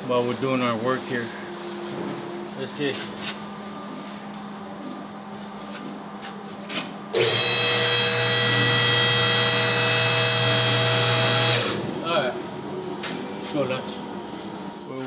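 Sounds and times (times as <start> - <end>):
electric motor running: 7.2 - 11.8.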